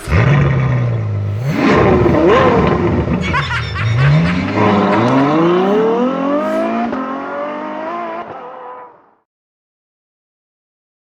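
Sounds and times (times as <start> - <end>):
car engine accelerating hard: 0.0 - 9.2.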